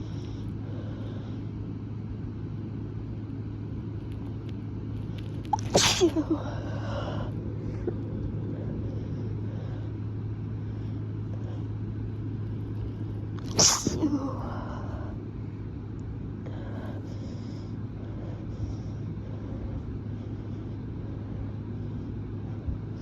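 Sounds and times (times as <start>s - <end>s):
steady low hum: 0.0s - 23.0s
person sneezing: 5.5s - 6.4s, 13.4s - 14.4s.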